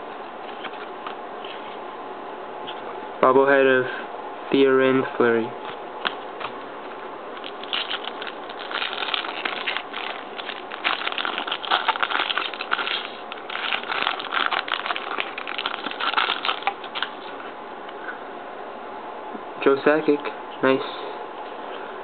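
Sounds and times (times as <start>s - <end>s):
card pack wrappers crinkling: 7.3s - 17.4s.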